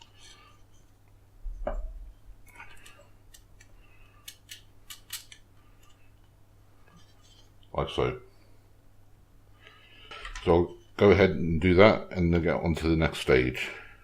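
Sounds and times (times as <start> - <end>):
small parts being handled: 2.6 - 7.6.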